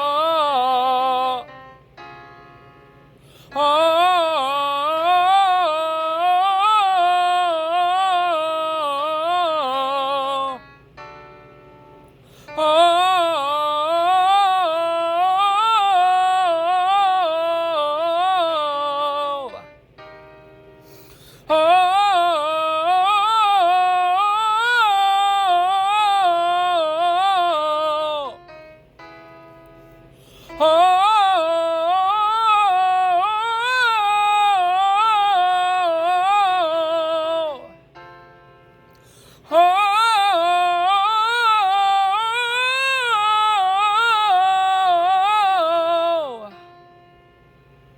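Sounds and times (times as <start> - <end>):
person singing a held vowel: 0.0 - 1.7, 3.5 - 10.9, 12.5 - 19.8, 21.4 - 28.6, 30.5 - 38.0, 39.4 - 46.7
quick breath: 3.2 - 3.5, 12.1 - 12.6, 20.8 - 21.5, 29.7 - 30.6, 38.9 - 39.5.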